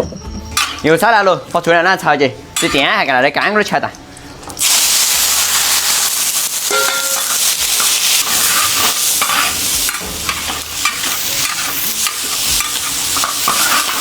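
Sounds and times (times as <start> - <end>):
food sizzling in a wok: 4.6 - 14.0
spatula scraping a wok: 7.7 - 14.0.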